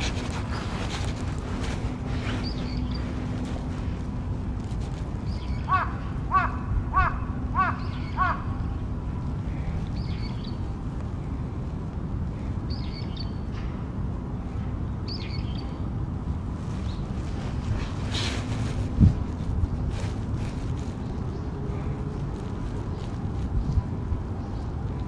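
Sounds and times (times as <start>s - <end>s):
steady low rumble: 0.0s - 25.0s
thin high bird calls: 0.1s - 3.4s, 5.2s - 8.7s, 9.6s - 10.7s
crow cawing: 5.7s - 8.5s.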